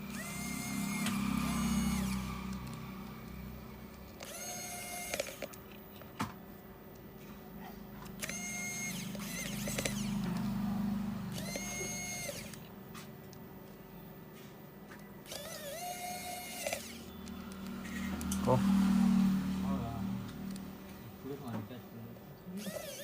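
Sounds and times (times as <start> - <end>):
motorised tool spinning: 0.0 - 6.1, 8.0 - 12.7, 15.2 - 19.3, 22.5 - 23.0
sharp clicks: 0.2 - 6.1, 8.0 - 10.5, 15.2 - 18.4.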